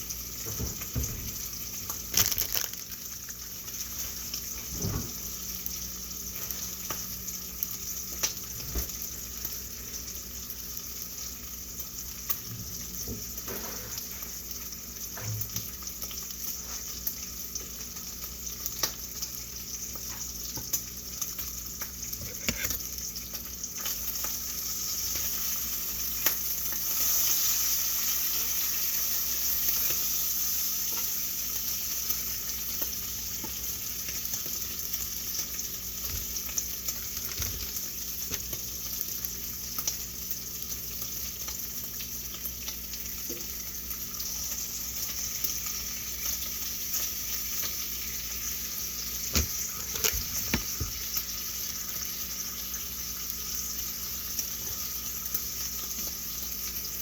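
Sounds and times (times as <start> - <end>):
food sizzling in a pan: 0.0 - 57.0.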